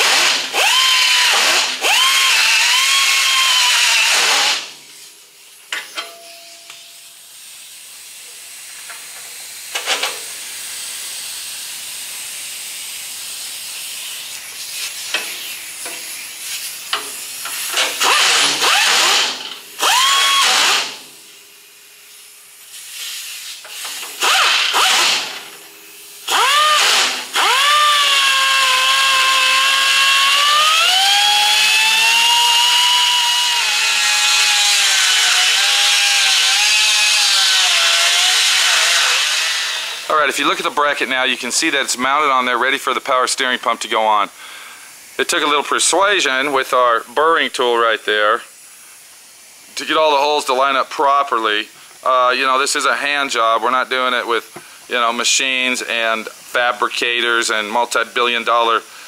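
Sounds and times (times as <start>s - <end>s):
rotary tool grinding metal: 0.0s - 4.7s, 16.9s - 21.0s, 23.6s - 25.4s, 26.3s - 40.1s.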